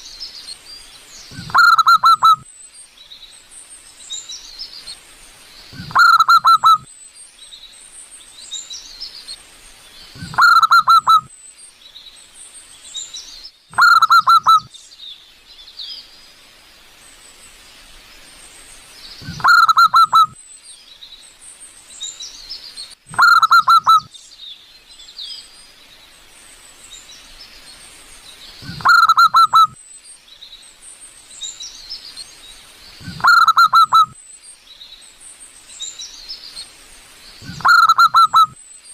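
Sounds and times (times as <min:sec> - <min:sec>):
small birds chirping: 0:00.0 - 0:38.9
dove cooing: 0:01.3 - 0:02.4, 0:05.8 - 0:06.8, 0:10.2 - 0:11.3, 0:13.8 - 0:14.7, 0:19.2 - 0:20.4, 0:23.1 - 0:24.1, 0:28.6 - 0:29.8, 0:33.0 - 0:34.2, 0:37.4 - 0:38.6.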